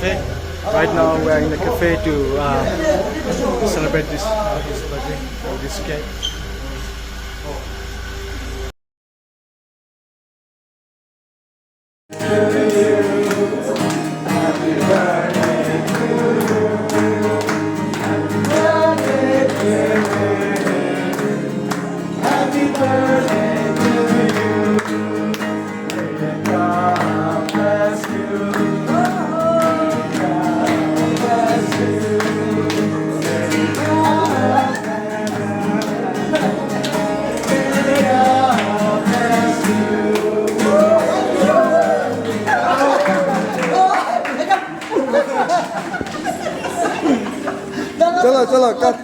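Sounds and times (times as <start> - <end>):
song with singing and instruments: 12.1 - 43.4.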